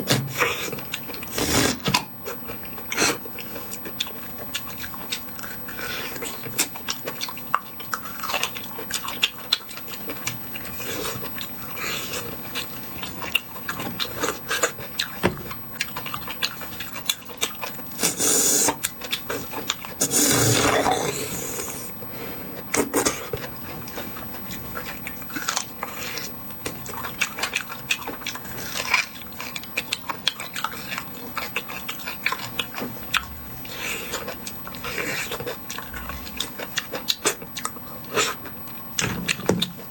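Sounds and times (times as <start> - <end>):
wet chewing: 0.3 - 39.9
sucking: 20.0 - 21.9.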